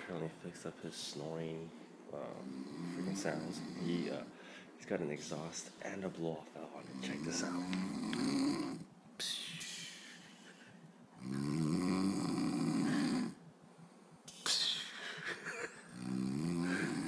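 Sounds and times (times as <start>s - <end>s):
man snoring: 2.2s - 4.3s, 6.8s - 8.9s, 11.2s - 13.4s, 15.8s - 17.0s.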